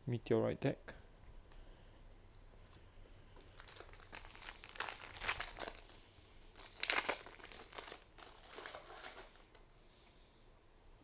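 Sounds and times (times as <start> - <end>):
foil wrapper crinkling: 3.4 - 9.7.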